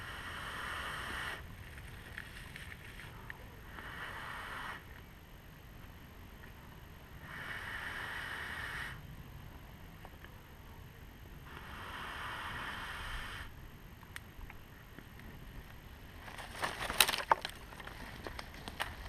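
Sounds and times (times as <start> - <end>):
steady hiss: 0.0 - 19.0
twigs cracking and snapping: 16.2 - 19.0.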